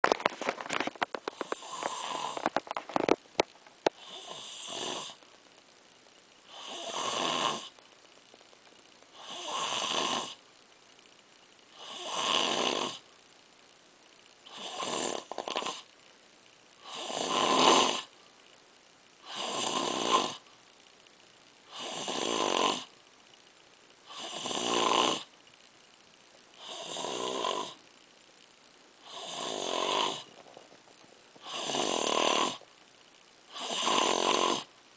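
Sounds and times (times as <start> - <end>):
person snoring: 1.3 - 2.7, 3.9 - 5.2, 6.5 - 7.8, 9.1 - 10.4, 11.7 - 13.0, 14.4 - 15.9, 16.8 - 18.1, 19.2 - 20.4, 21.7 - 22.9, 24.1 - 25.3, 26.6 - 27.8, 29.0 - 30.5, 31.4 - 32.6, 33.5 - 34.7.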